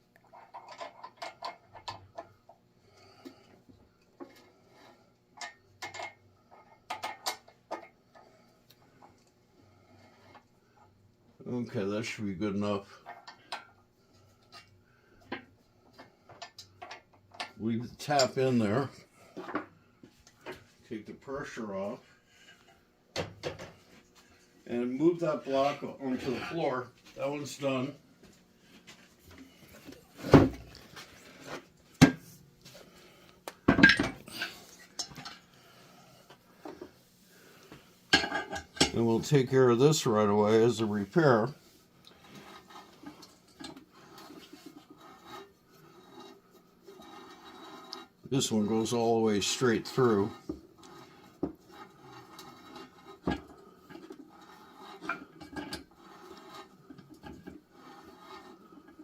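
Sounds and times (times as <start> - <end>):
metal tools clinking and knocking: 33.7 - 35.4
metal scraping: 42.2 - 59.0.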